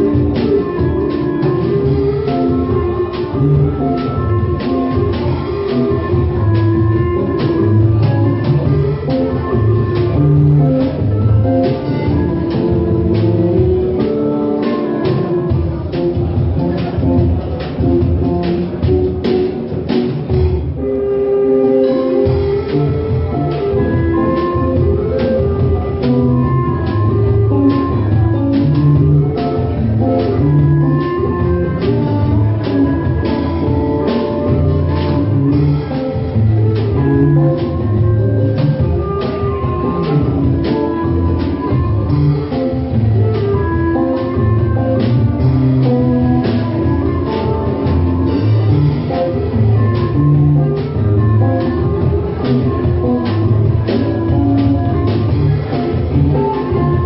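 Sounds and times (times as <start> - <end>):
percussive beat: 0.0 - 20.8, 22.2 - 57.0
loud bass notes: 0.0 - 57.0
melody: 20.9 - 57.0.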